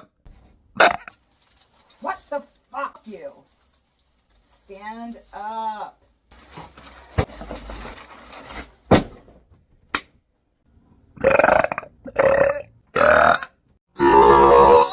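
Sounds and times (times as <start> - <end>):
rustling: 1.1 - 9.3
woman burping: 11.2 - 14.9.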